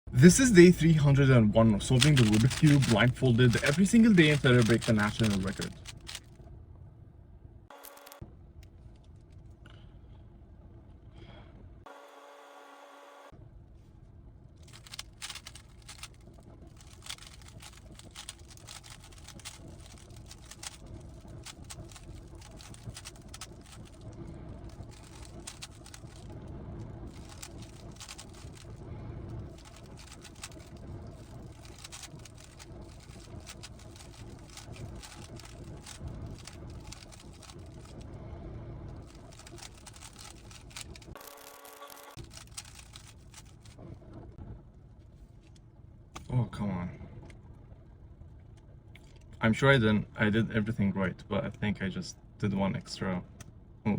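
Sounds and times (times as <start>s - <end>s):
steady low rumble: 0.1s - 11.9s, 13.3s - 41.2s, 42.1s - 53.9s
puzzle cube plastic clicks: 1.9s - 6.3s, 14.7s - 16.2s, 16.8s - 24.0s, 24.7s - 26.3s, 27.1s - 28.8s, 29.6s - 38.0s, 39.1s - 41.2s, 42.2s - 43.8s.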